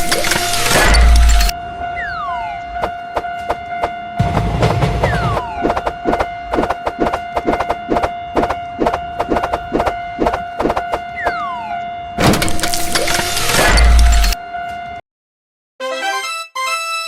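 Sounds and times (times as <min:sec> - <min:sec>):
crossing alarm bell ringing: 0:00.0 - 0:15.0
steady electronic tone: 0:04.2 - 0:14.4.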